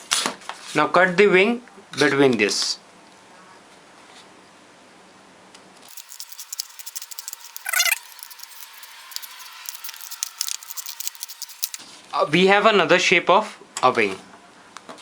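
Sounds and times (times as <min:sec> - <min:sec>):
scissors snipping paper: 0:05.9 - 0:11.8
short high squeak: 0:05.9 - 0:11.8.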